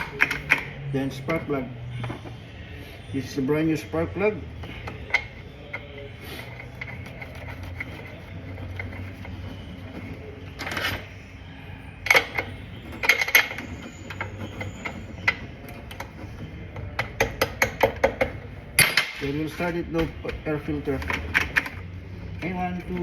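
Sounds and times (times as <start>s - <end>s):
scraping rattle: 12.0s - 19.7s.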